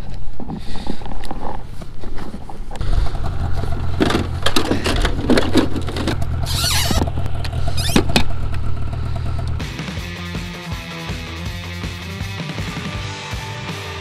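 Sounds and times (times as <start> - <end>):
vehicle engine humming: 2.4 - 10.5
knocks and rattles: 2.8 - 9.6
high falling squeal: 6.4 - 7.0.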